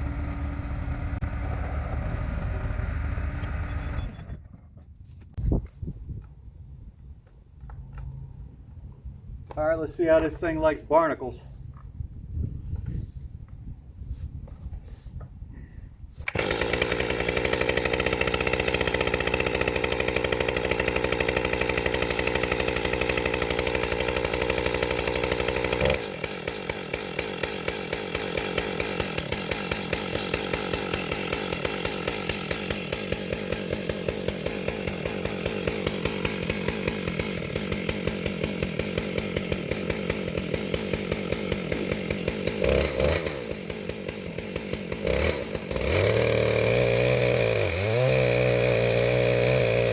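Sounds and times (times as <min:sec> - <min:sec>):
chainsaw ripping a log: 0:16.2 - 0:49.9.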